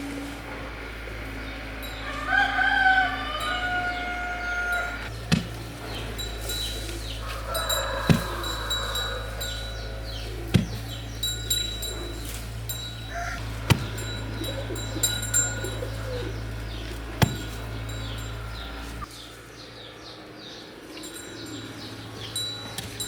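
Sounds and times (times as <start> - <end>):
steady low hum: 0.0 - 19.1
small birds chirping: 0.0 - 23.0
sharp knocks: 8.0 - 8.8, 10.5 - 19.0.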